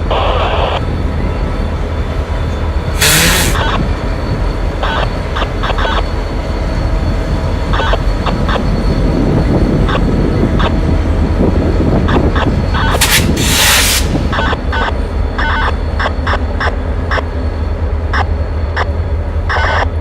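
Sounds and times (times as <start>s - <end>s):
diesel locomotive rumble: 0.0s - 20.0s
loud hiss: 3.0s - 3.6s, 13.0s - 14.3s.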